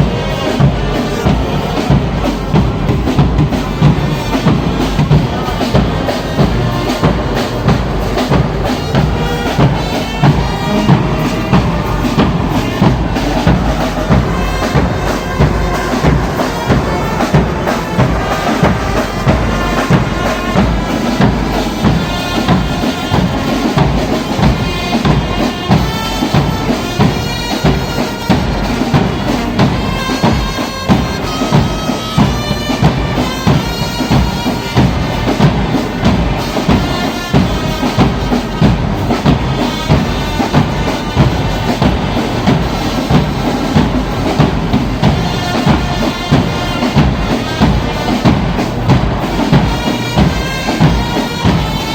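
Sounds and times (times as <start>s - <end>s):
brass instruments playing: 0.0s - 51.9s
steady drum beat: 0.0s - 51.9s.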